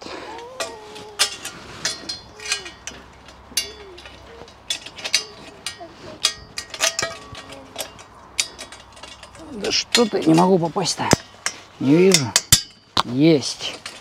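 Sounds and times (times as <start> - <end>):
bolt clicking against metal frame: 0.6 - 10.5.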